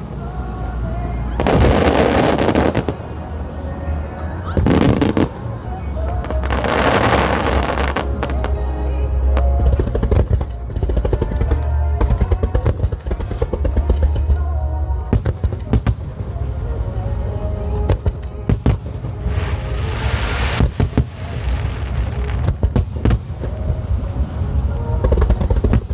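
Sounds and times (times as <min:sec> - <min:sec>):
fireworks bursting and crackling: 0:00.0 - 0:03.2, 0:09.6 - 0:16.5, 0:17.8 - 0:25.9
music playing: 0:00.0 - 0:25.9.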